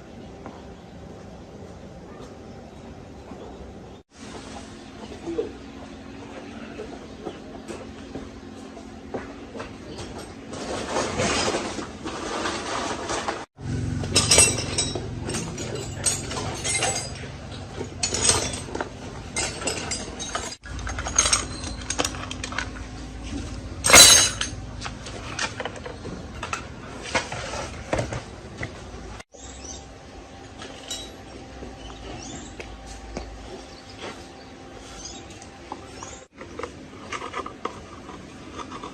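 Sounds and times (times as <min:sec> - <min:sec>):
metal tools clinking and knocking: 0:14.1 - 0:26.7, 0:30.5 - 0:31.3.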